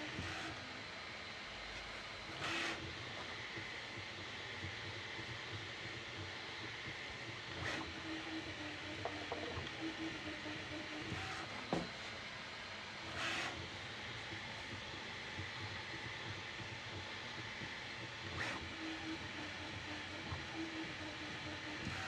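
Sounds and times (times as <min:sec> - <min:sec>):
printer fan hum: 0:00.0 - 0:22.0.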